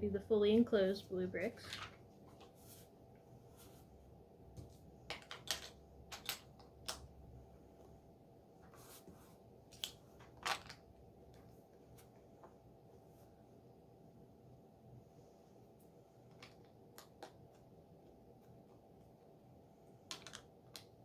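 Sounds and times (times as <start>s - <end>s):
plastic bricks clicking together: 20.1s - 21.0s.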